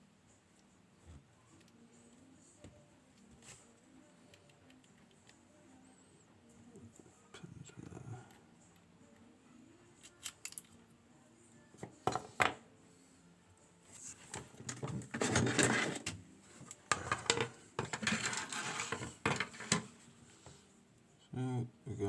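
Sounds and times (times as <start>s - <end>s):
metal parts clicking: 16.9s - 19.9s
metal parts rattling: 16.9s - 19.9s.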